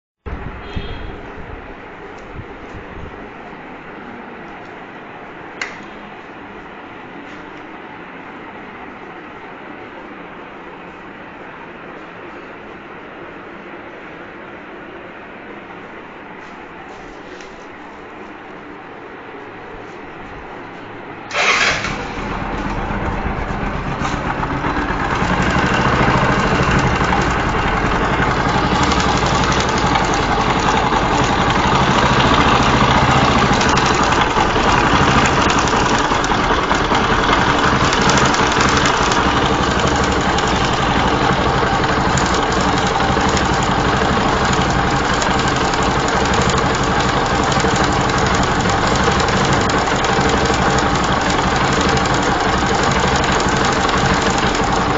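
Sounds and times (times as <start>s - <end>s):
motorcycle engine starting and idling: 21.3s - 54.9s.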